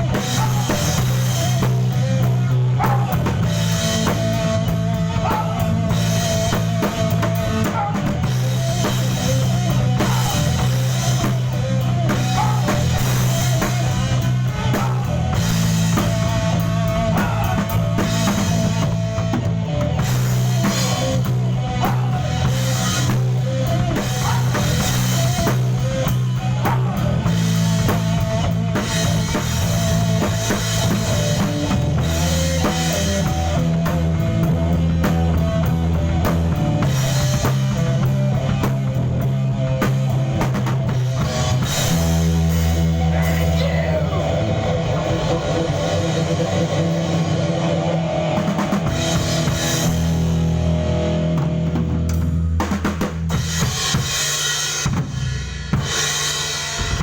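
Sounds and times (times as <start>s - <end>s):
bass guitar: 0.0s - 57.0s
drum kit beat: 0.0s - 57.0s
electric guitar: 0.0s - 57.0s.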